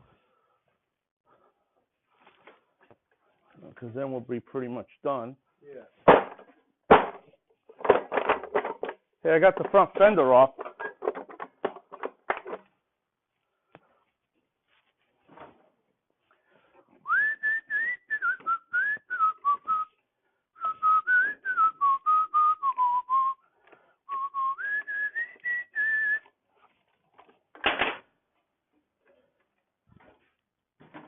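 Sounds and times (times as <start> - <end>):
clunk: 6.1 - 12.7
person whistling a tune: 17.0 - 20.0, 20.6 - 23.4, 24.1 - 26.3.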